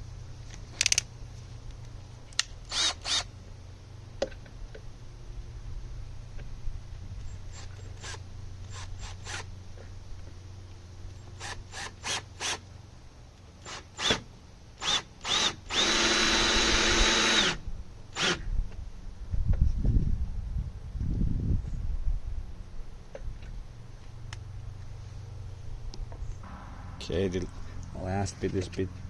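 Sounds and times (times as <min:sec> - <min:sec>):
cordless drill driving screw into wood: 0:02.6 - 0:03.3, 0:07.5 - 0:09.5, 0:11.4 - 0:12.6, 0:13.6 - 0:18.5.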